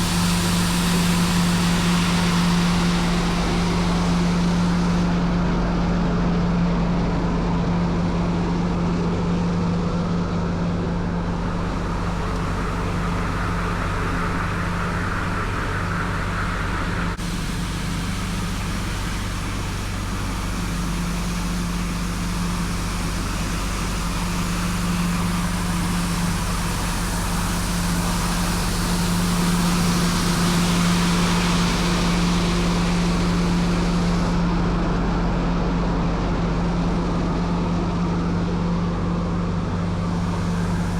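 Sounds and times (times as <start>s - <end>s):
hiss: 0.0s - 5.4s, 11.2s - 34.7s, 39.6s - 40.9s
street sweeper droning: 0.0s - 40.9s.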